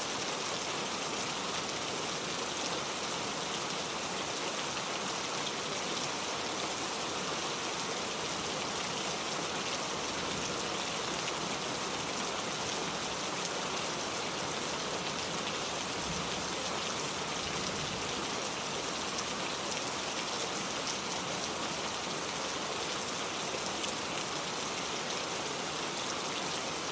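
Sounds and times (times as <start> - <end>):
rain pattering: 7.7 - 24.7.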